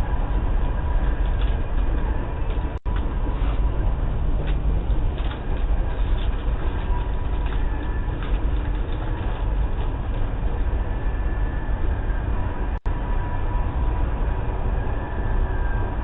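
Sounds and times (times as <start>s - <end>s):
low rumbling noise: 0.0s - 16.0s.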